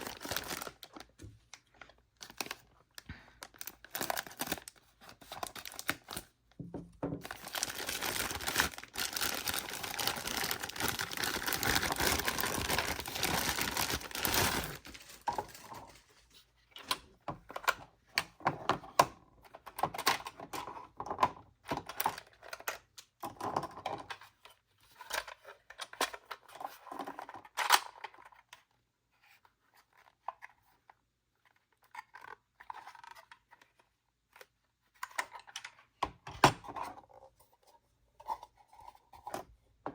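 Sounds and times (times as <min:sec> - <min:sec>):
packaging tearing: 0:00.0 - 0:01.1, 0:03.4 - 0:04.8, 0:07.3 - 0:15.6
plastic clicks and crinkles: 0:00.0 - 0:28.8.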